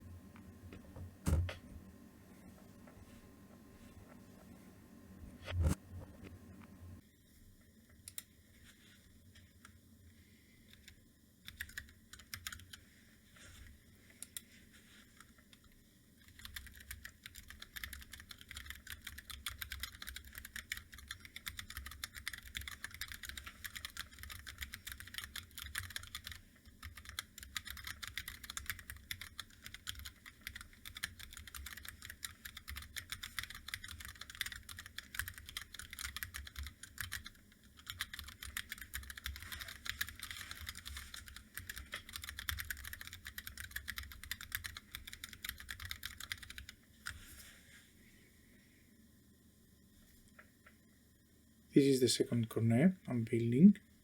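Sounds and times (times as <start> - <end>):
mechanical keyboard typing: 10.7 - 12.8, 16.2 - 47.2.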